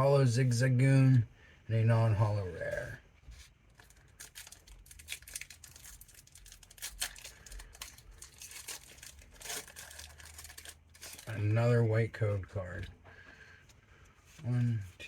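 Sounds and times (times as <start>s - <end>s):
foil wrapper tearing and crinkling: 3.7s - 11.4s.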